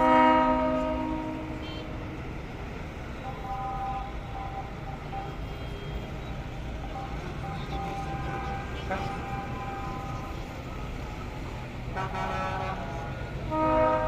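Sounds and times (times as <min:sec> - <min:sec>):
coach horn blast: 0:00.0 - 0:02.2, 0:03.2 - 0:05.9, 0:06.9 - 0:10.3, 0:11.9 - 0:14.0
faint steady tones: 0:00.0 - 0:14.0.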